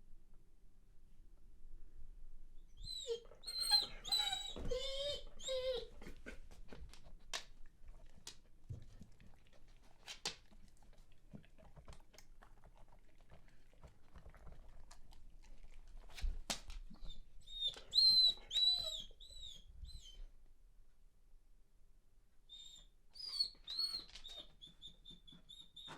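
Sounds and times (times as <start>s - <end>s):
dog whimpering: 2.8s - 6.6s, 17.0s - 20.3s, 22.5s - 25.9s.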